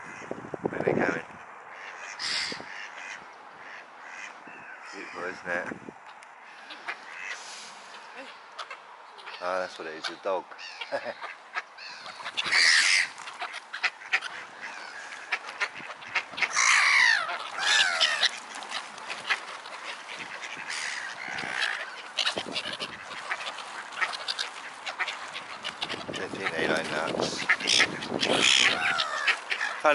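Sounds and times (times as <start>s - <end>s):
ducks quacking: 1.0s - 29.9s
pond birds calling: 1.3s - 29.9s.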